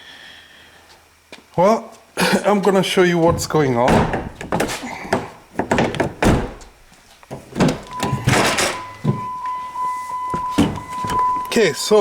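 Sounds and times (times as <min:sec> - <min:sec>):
car door thunks: 0:03.3 - 0:09.3
electronic beep tone: 0:07.9 - 0:12.0.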